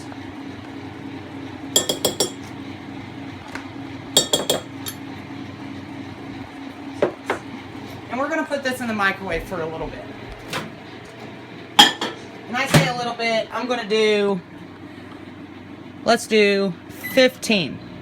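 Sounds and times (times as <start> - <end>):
spoon clinking against glass cup: 1.8 - 2.5, 4.2 - 5.0.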